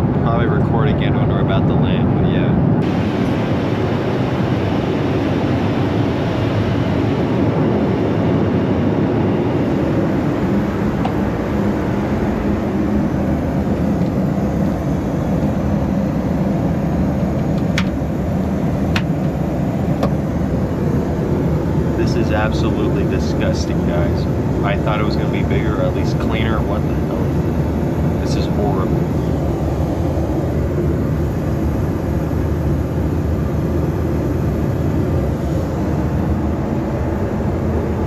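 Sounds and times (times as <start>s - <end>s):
airliner cabin engine rush: 0.0s - 38.0s.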